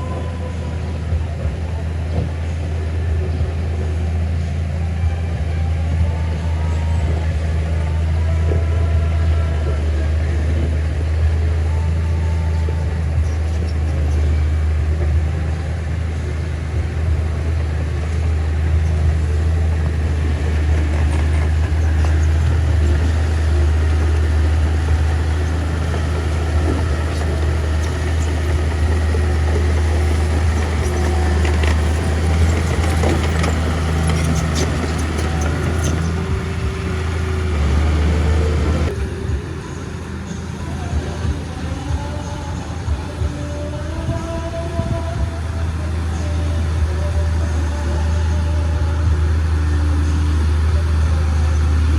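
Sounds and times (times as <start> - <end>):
bulldozer diesel engine droning: 0.0 - 51.9.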